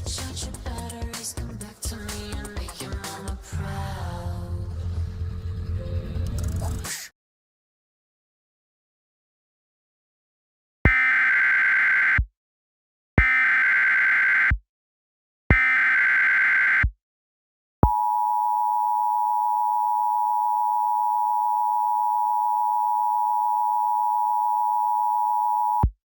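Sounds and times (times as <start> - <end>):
shrill two-tone alert signal: 15.5 - 16.9.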